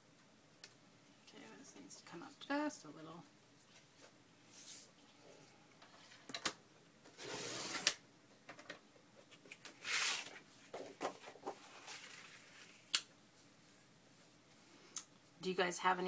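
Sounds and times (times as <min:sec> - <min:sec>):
paper rustling: 0:09.3 - 0:12.9.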